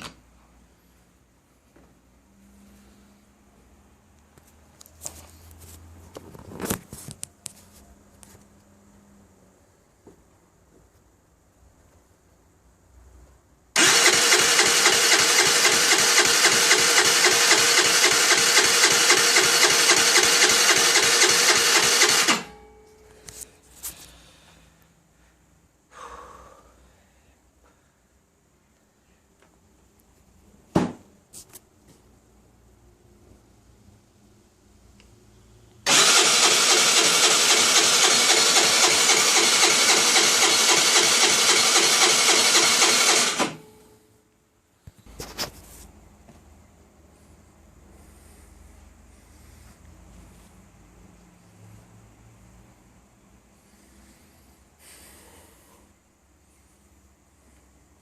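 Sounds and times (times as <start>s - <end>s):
electric starter cranking engine: 13.8s - 22.6s, 35.8s - 43.8s.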